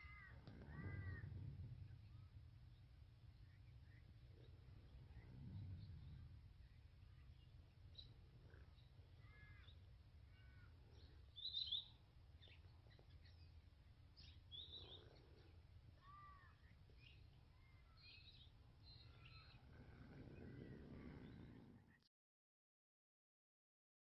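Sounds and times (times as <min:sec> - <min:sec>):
low steady rumble: 0:00.0 - 0:22.0
birds chirping and calling: 0:14.2 - 0:16.4, 0:17.0 - 0:21.7.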